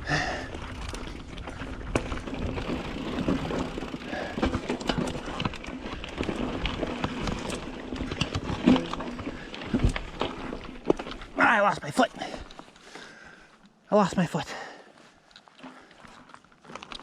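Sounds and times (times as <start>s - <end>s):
bike knocking and rattling: 0.0s - 12.9s, 15.5s - 17.0s
bike tyres rumbling on dirt: 0.0s - 13.3s.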